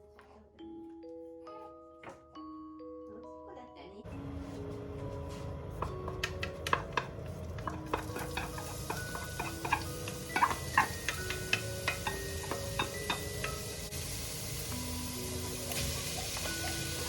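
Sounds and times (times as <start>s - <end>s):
light chiming background music: 0.0s - 17.0s
utensil knocking against pan: 5.8s - 13.6s
food sizzling in a pan: 6.7s - 17.0s.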